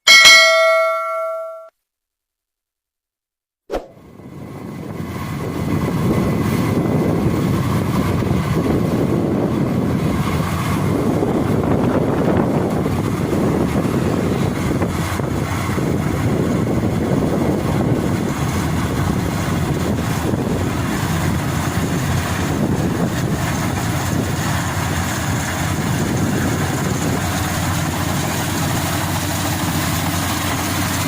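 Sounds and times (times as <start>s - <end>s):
wind on microphone: 3.9s - 28.4s
combine harvester rumbling: 4.0s - 31.0s.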